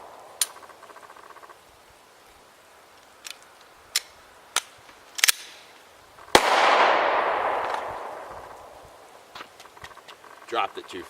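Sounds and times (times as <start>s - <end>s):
pistol shot with echo: 6.3s - 8.9s.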